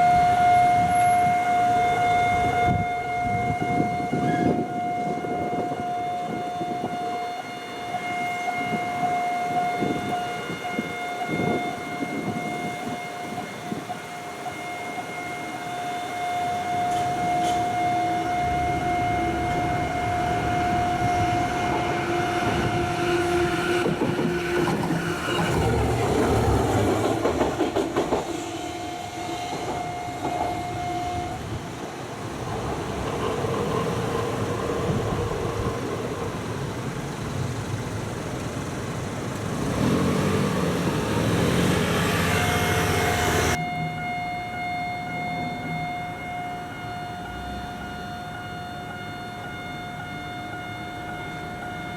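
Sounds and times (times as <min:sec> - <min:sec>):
level crossing alarm ringing: 0:00.0 - 0:24.8, 0:42.2 - 0:51.9
train clattering over crossing: 0:00.0 - 0:51.9.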